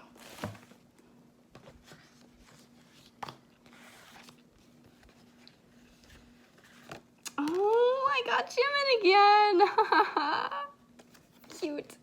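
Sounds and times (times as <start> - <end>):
paper album rustling: 0.1 - 0.8, 1.5 - 7.1.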